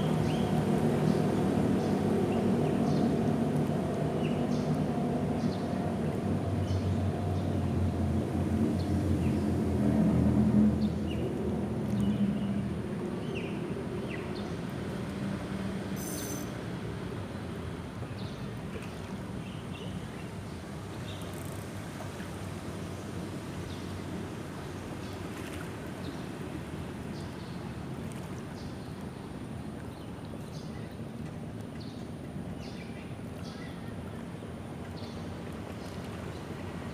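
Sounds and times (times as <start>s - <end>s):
vehicles rumbling over bridge: 0.0s - 18.6s
faint short chirps: 16.0s - 16.6s.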